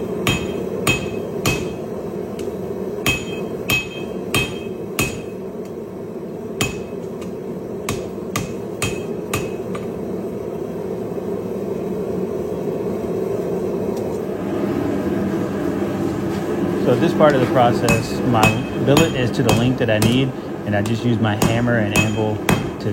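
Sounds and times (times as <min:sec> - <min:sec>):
steady running noise: 0:00.0 - 0:22.9
hammer striking steel on anvil: 0:00.2 - 0:01.8, 0:02.4 - 0:05.4, 0:06.6 - 0:09.9, 0:17.4 - 0:22.8.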